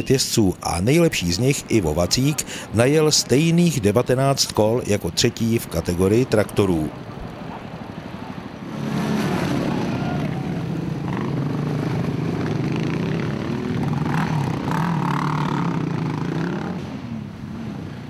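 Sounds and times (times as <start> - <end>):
quad bike engines running: 8.6 - 18.0.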